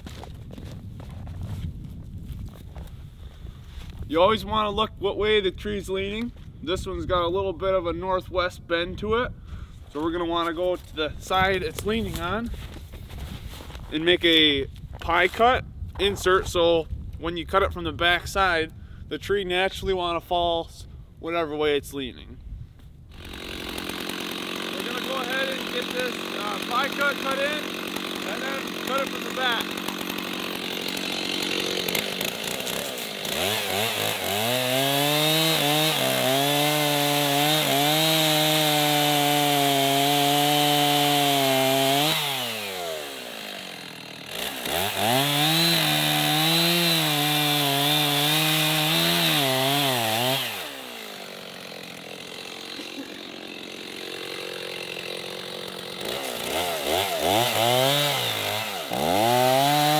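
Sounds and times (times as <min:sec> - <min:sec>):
chainsaw revving and cutting wood: 0:10.0 - 0:14.4, 0:23.1 - 0:59.9
chainsaw idling: 0:23.1 - 0:59.9.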